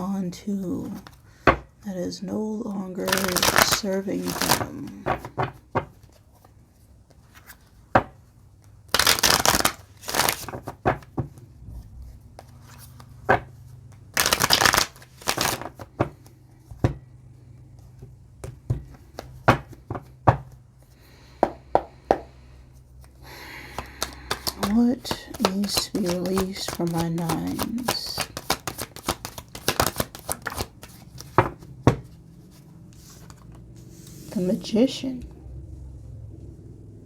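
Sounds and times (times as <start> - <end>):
cards tapping and clicking: 3.1 - 6.1, 7.9 - 11.4, 12.3 - 17.0, 17.8 - 20.6, 23.0 - 32.1
cards being shuffled: 3.1 - 8.0, 8.6 - 17.0, 17.7 - 20.1, 23.0 - 34.5.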